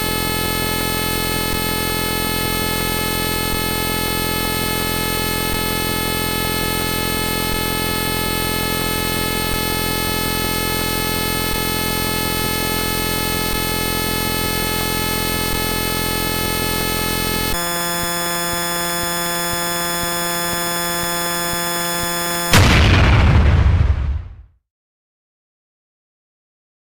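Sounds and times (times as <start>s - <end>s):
harsh buzzing synthesized chord: 0.0s - 22.8s
loud noisy explosion-like blast: 22.5s - 24.4s.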